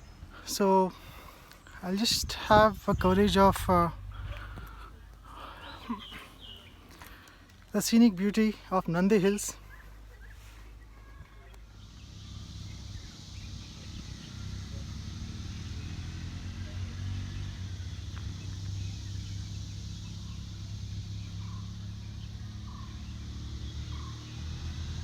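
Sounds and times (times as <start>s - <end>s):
low rumble: 1.0s - 6.9s.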